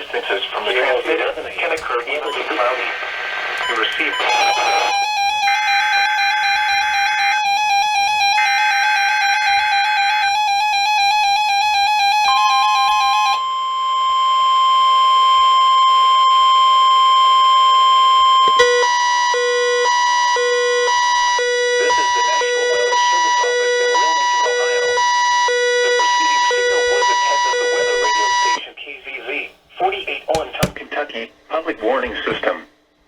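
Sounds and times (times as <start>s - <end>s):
weather radio alarm tone: 1.7s - 28.6s.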